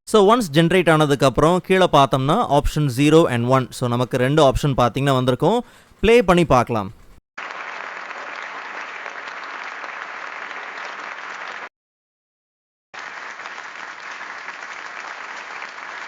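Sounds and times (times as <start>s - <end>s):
small group cheering and applauding: 7.4s - 11.7s, 13.0s - 16.0s.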